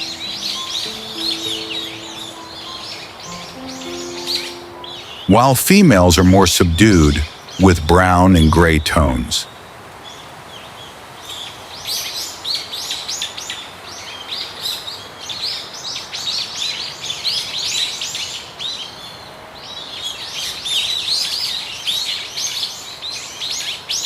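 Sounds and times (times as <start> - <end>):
small birds chirping: 0.0 - 5.3.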